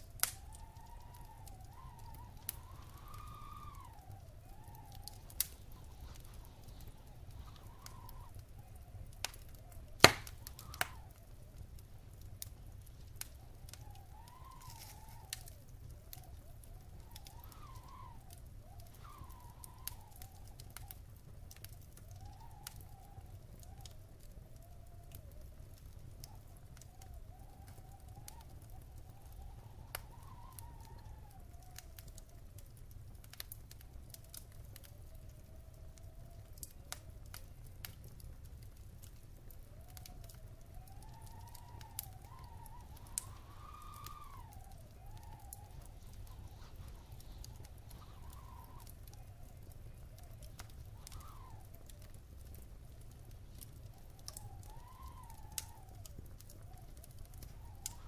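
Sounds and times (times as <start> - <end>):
faint wavering whistle: 0.0 - 11.7, 12.5 - 21.1, 22.0 - 32.4, 39.6 - 58.0
wood fire crackling: 0.0 - 58.0
sharp pop of fire: 10.0 - 11.1.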